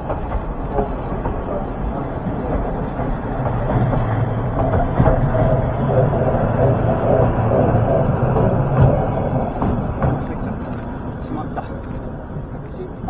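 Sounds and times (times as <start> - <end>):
train running past: 0.0 - 13.0.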